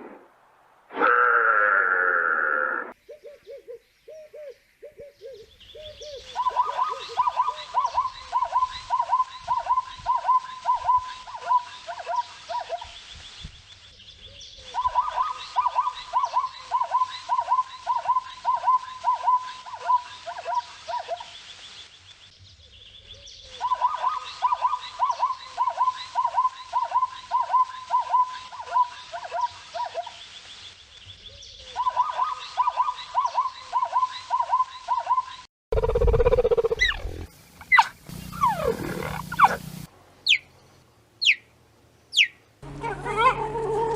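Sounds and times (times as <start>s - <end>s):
low animal sound: 0.9s - 3.0s, 38.3s - 39.7s
bird calling repeated notes: 31.8s - 40.5s.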